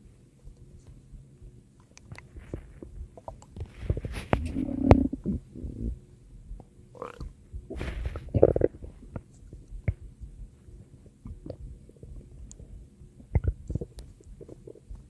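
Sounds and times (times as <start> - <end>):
stomach growling and gurgling: 2.1 - 6.0, 6.9 - 10.0, 11.2 - 15.0.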